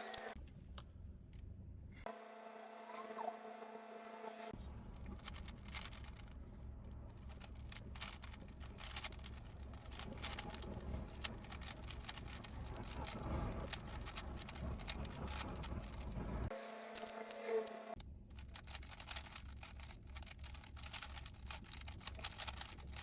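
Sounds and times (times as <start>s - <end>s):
low steady hum: 0.0s - 23.0s
puzzle cube plastic clicking: 5.0s - 6.3s, 7.2s - 16.1s, 18.3s - 23.0s.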